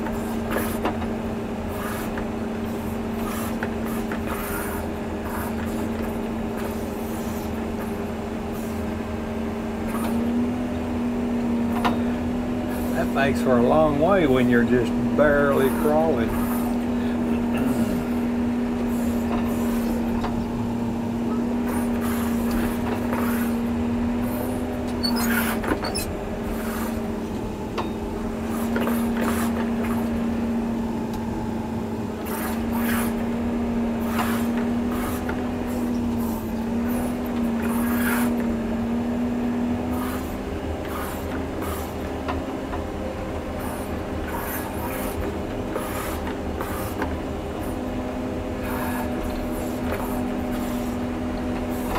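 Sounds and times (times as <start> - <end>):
diesel engine humming: 0.0 - 51.9
blade scraping dirt: 1.7 - 8.9, 9.8 - 10.4, 12.7 - 20.4, 21.3 - 27.2, 28.4 - 30.3, 32.2 - 42.2, 43.5 - 47.8, 48.6 - 51.9.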